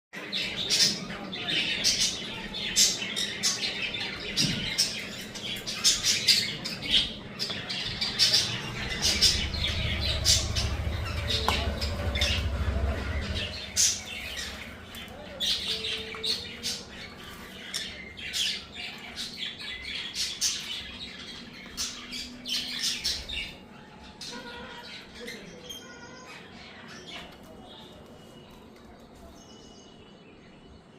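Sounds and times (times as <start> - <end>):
parrots squawking: 0.4 - 27.0
low rumble: 6.7 - 17.1.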